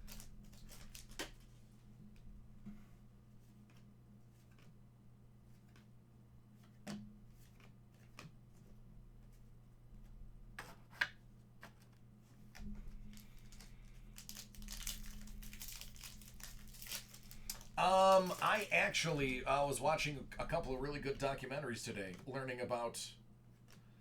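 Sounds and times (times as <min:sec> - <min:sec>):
wrapper tearing: 0:00.0 - 0:01.5, 0:13.0 - 0:20.1
wrapper crinkling: 0:00.0 - 0:01.6, 0:12.6 - 0:21.4.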